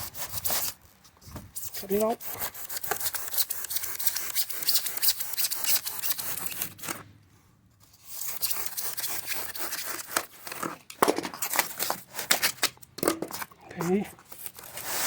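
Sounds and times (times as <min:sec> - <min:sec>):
blade scraping through sheet material: 0:01.5 - 0:07.0, 0:07.9 - 0:10.6.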